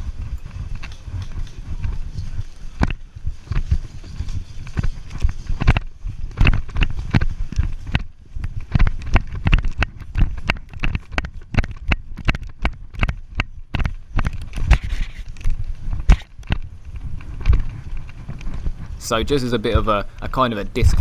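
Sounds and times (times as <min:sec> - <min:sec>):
footsteps on woodland ground: 0:18.4 - 0:21.0.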